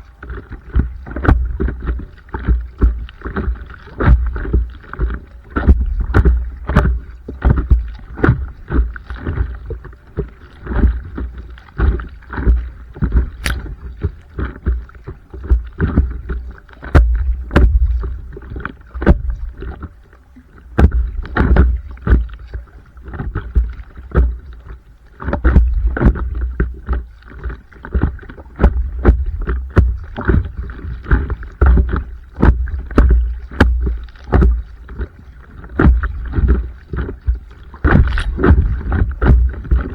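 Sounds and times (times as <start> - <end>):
paddle splashing in water: 0.0 - 39.9
low rumble: 37.3 - 39.9.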